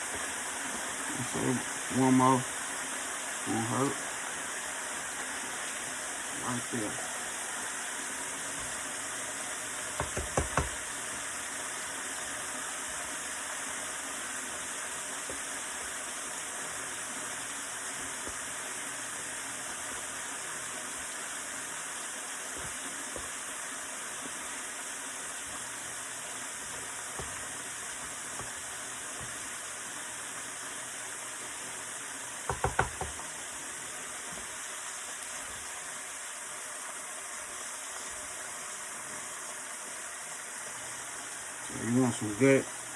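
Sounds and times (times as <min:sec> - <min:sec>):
chicken deep-frying sizzle: 0:00.0 - 0:42.9
sharp knocks: 0:09.9 - 0:10.8, 0:32.5 - 0:33.2.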